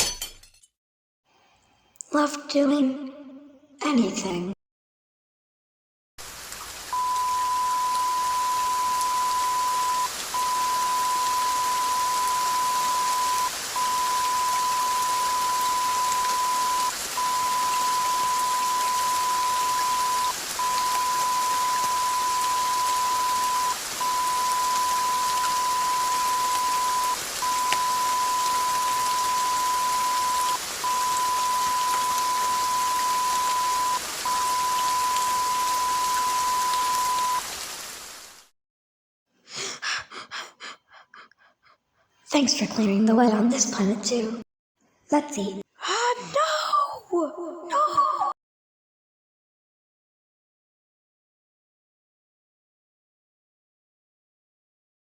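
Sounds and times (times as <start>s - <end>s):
high-pitched beep tone: 7.0s - 37.4s.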